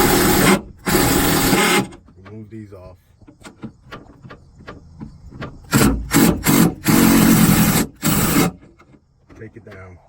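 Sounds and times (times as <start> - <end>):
power tool loosening bolts: 0.0 - 2.1, 5.7 - 9.0.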